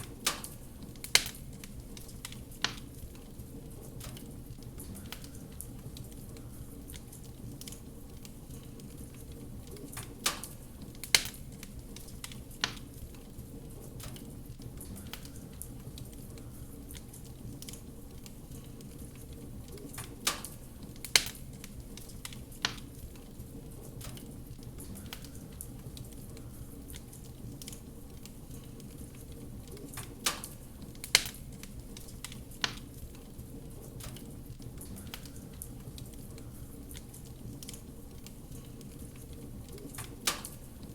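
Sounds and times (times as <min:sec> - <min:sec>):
wood fire crackling: 0:00.0 - 0:40.9
sharp pops: 0:09.9 - 0:11.4, 0:29.9 - 0:31.4, 0:39.9 - 0:40.6.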